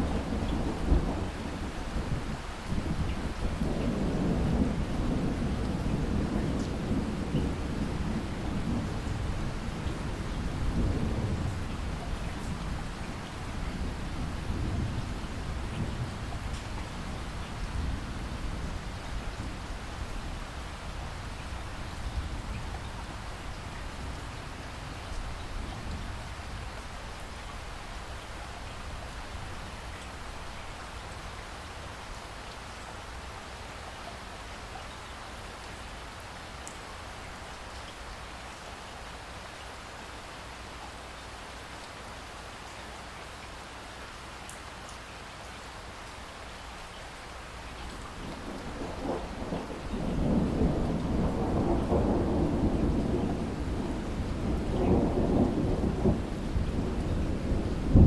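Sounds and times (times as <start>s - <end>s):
thunder rumbling: 0.0s - 20.4s, 48.0s - 58.0s
steady rain falling: 0.0s - 58.0s.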